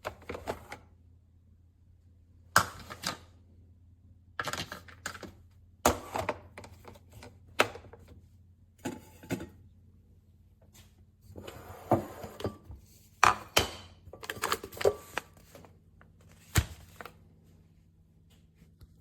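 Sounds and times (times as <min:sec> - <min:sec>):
objects knocking and clattering: 0:08.8 - 0:09.6.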